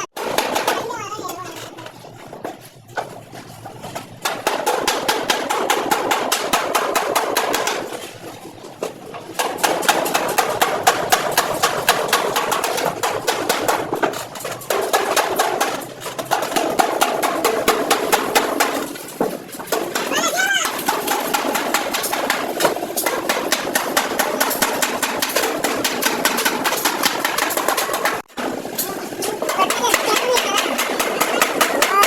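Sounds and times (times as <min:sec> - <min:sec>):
hammer striking sheet steel: 0:00.1 - 0:01.5, 0:03.0 - 0:32.0.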